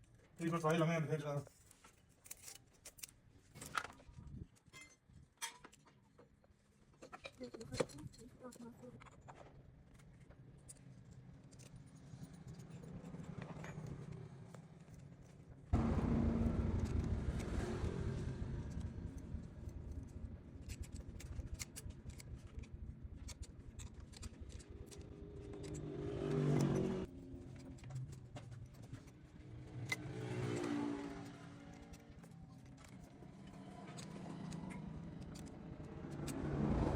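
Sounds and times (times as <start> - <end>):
motorcycle engine running: 15.8 - 21.6, 24.5 - 27.1.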